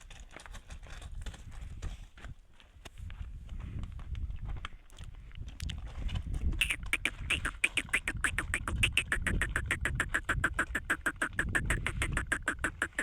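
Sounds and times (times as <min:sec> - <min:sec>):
rapid short animal calls: 0:06.6 - 0:13.0.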